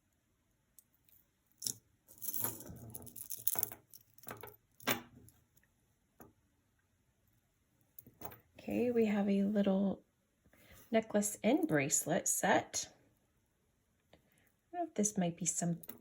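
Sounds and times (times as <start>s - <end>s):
metal jewelry jingling: 1.6s - 5.0s.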